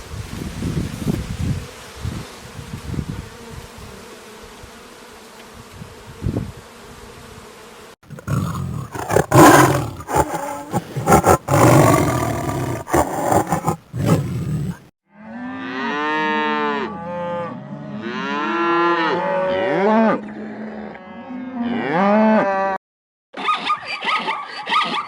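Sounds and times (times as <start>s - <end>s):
big cat roaring: 8.1s - 14.8s.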